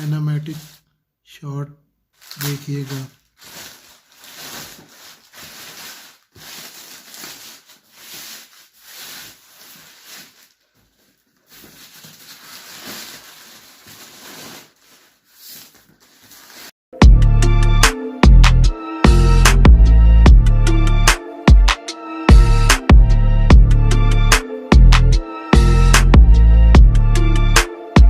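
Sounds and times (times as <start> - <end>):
plastic wrap rustling: 0.0 - 0.9, 2.1 - 16.8
loud music with heavy bass: 17.0 - 28.0.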